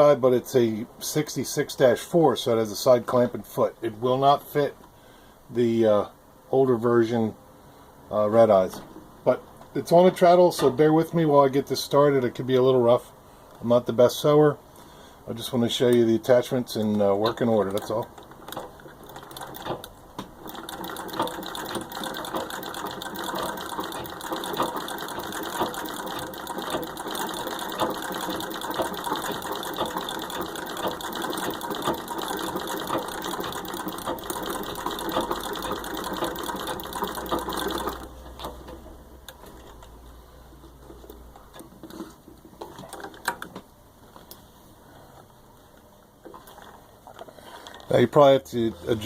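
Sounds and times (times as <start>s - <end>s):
treadle sewing machine clattering: 17.2s - 38.8s.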